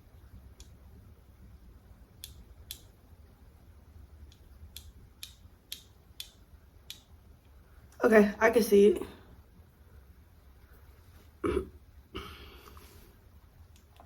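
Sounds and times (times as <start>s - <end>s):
faint low room hum: 0.0s - 14.0s.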